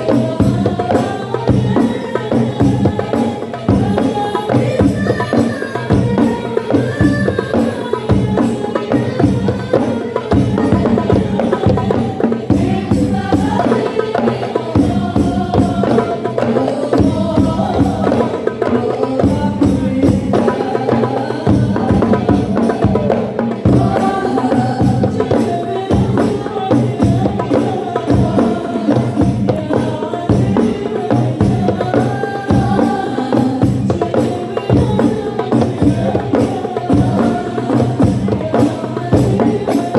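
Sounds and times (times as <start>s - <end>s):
fast hand drum percussion: 0.0s - 39.9s
voices chanting together: 0.0s - 39.9s.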